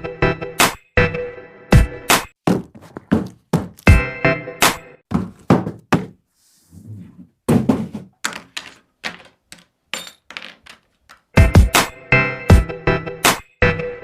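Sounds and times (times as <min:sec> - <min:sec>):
box being handled thuds: 0:02.4 - 0:03.9, 0:05.1 - 0:06.2, 0:07.5 - 0:09.3.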